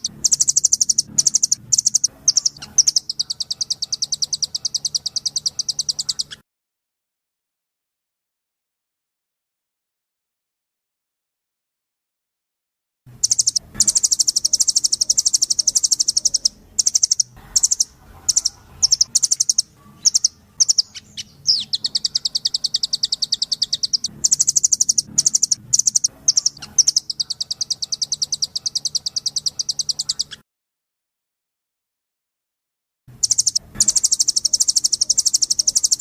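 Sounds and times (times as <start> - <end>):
bird singing fast high trills: 0.0 - 6.4, 13.2 - 30.4, 33.2 - 36.0.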